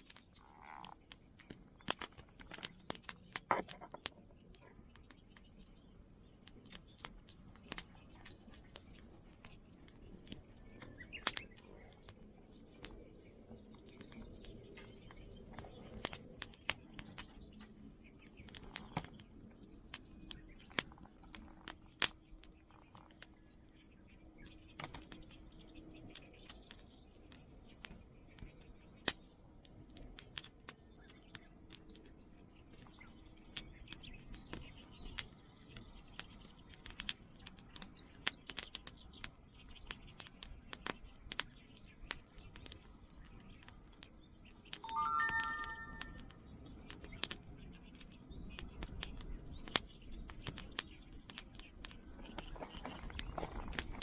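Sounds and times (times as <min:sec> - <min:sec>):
high-pitched squeak: 0:44.9 - 0:46.2.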